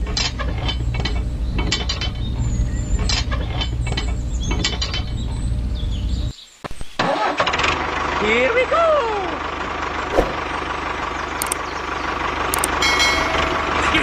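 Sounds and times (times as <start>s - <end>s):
gears clicking and rattling: 11.4s - 11.6s.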